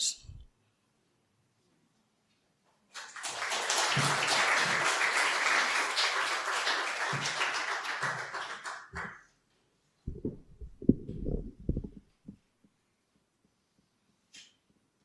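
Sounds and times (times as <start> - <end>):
crowd applauding: 3.0 - 9.3.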